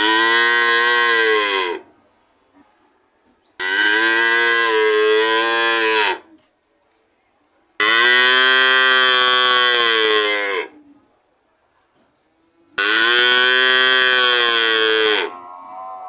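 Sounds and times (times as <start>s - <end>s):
cow mooing: 0.0s - 1.8s, 3.6s - 6.2s, 7.8s - 10.7s, 12.8s - 16.0s.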